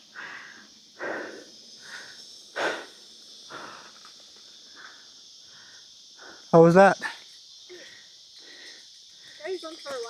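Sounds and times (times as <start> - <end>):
high insect buzz: 0.0 - 10.0
person breathing: 0.1 - 4.0, 7.7 - 9.0.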